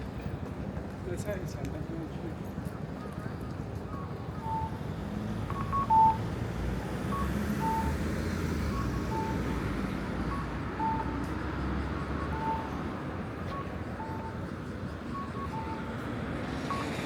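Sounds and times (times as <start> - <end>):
street traffic rumble: 0.0 - 17.0
two-tone electronic beeps: 4.0 - 4.9, 5.5 - 6.3, 7.1 - 8.0, 8.7 - 9.6, 10.2 - 11.3, 12.2 - 12.9, 16.6 - 17.0.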